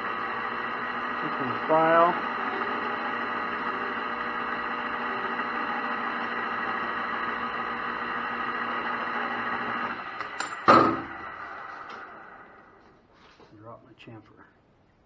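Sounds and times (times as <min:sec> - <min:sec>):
metal lathe humming: 0:00.0 - 0:12.9
sharp metallic clank: 0:10.2 - 0:11.2.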